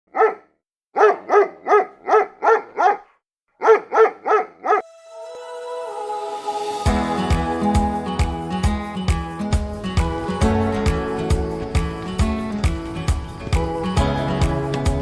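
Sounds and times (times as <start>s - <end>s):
dog barking: 0.1s - 4.8s
music: 4.8s - 15.0s.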